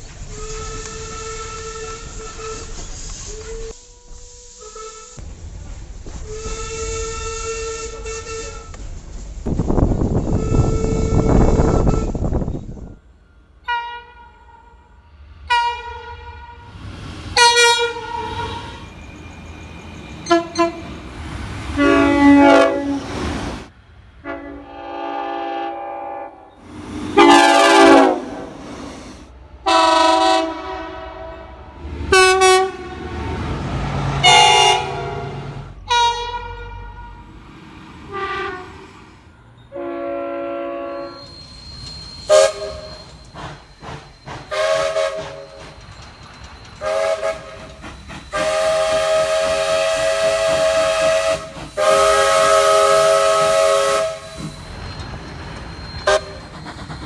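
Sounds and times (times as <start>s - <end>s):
locomotive air horn blasts: 0.3s - 2.7s, 6.2s - 8.7s, 10.2s - 12.4s, 13.6s - 14.9s, 15.5s - 16.7s, 17.4s - 18.9s, 20.2s - 23.4s, 24.2s - 37.3s, 38.1s - 38.9s, 39.7s - 41.3s, 42.3s - 43.0s, 44.5s - 45.6s, 46.8s - 47.7s, 48.4s - 54.5s.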